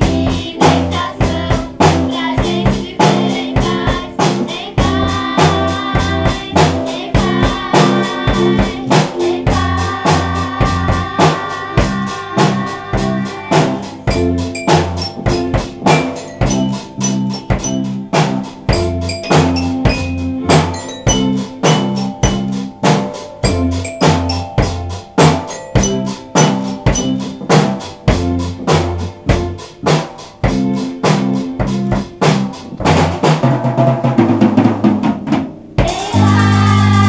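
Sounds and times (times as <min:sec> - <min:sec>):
drum kit beat with rimshots: 0:00.0 - 0:37.0
long held melodic notes: 0:11.6 - 0:29.6
stepping bass line: 0:11.8 - 0:22.7.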